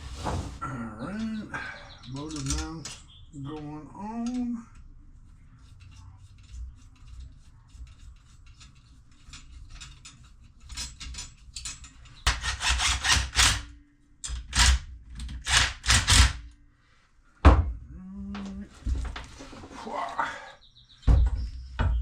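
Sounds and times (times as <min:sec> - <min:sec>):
loud rasping strokes: 0:12.3 - 0:13.6.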